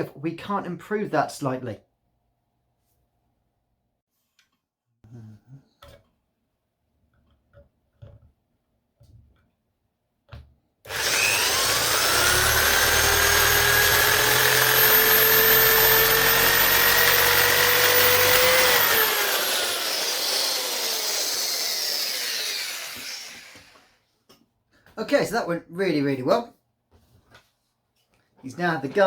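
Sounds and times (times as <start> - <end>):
rotary tool whine: 10.9 - 24.0.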